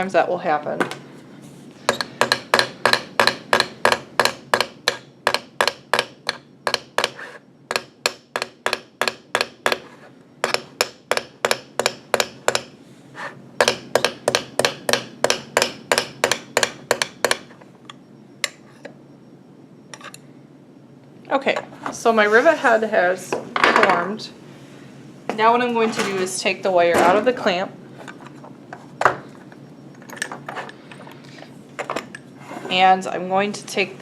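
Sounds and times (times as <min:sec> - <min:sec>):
small hammer tapping metal wire: 0:01.9 - 0:09.8, 0:10.4 - 0:12.7.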